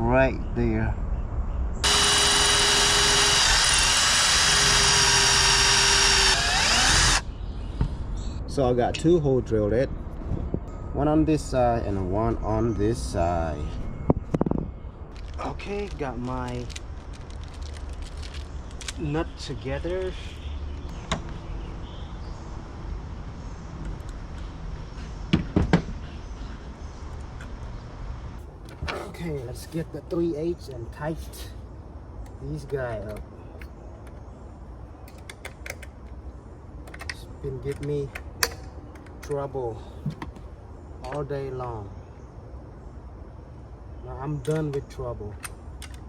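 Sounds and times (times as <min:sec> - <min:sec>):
power drill boring metal: 0:01.8 - 0:07.2
sharp metal clicks: 0:35.0 - 0:36.2.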